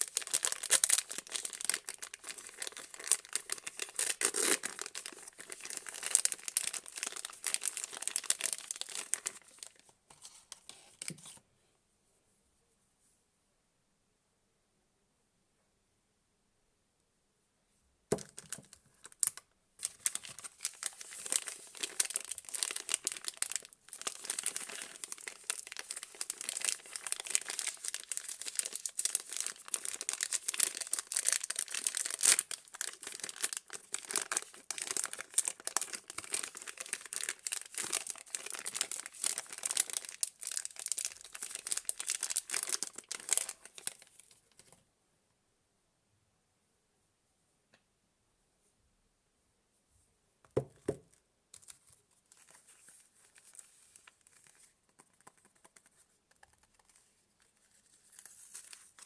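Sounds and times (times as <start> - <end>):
soap wrapping crinkling: 0.0 - 11.4, 18.1 - 44.8, 50.6 - 59.0.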